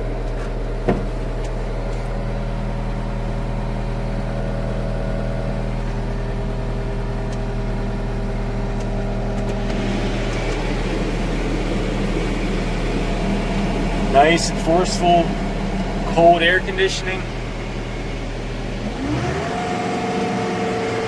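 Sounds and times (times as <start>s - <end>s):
air conditioning blower rushing: 0.0s - 21.0s
diesel engine idling: 0.0s - 21.0s.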